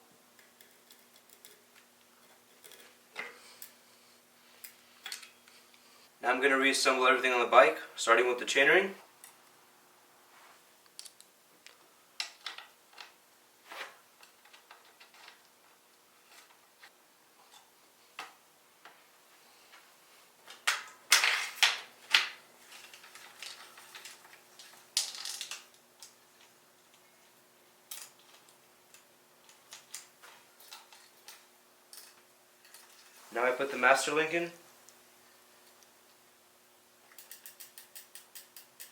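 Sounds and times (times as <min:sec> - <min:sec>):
metallic clicks of bicycle parts: 0:00.4 - 0:03.8, 0:04.6 - 0:05.6, 0:10.9 - 0:13.2, 0:37.1 - 0:38.9.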